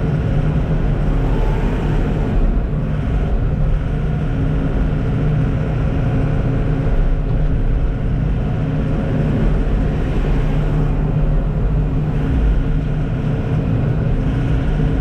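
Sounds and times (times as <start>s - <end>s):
heavy diesel engine droning: 0.0s - 15.0s.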